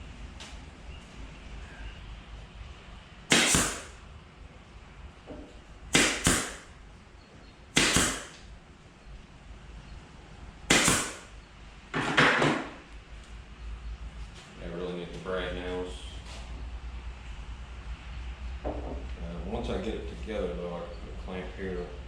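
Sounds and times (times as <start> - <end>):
pin nailer popping and hissing: 3.3 - 4.0, 5.9 - 6.7, 7.7 - 8.4, 10.7 - 11.4.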